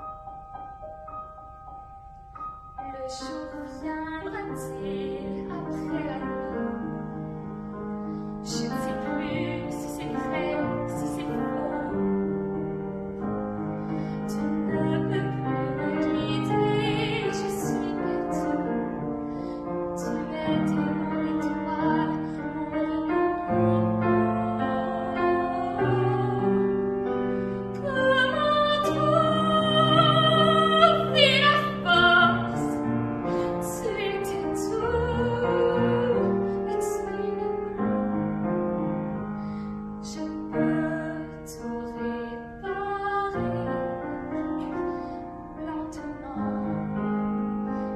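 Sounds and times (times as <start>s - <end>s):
piano accompaniment: 0.0s - 47.9s
woman singing a ballad: 2.9s - 6.9s, 8.4s - 12.2s, 14.2s - 19.0s, 19.9s - 38.0s, 40.0s - 47.1s.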